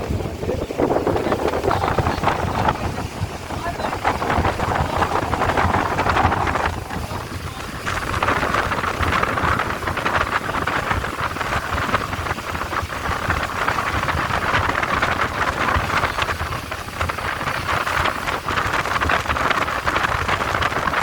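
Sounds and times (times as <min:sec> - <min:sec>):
speedboat running: 0:00.0 - 0:21.0
wind rushing over microphone: 0:00.0 - 0:21.0.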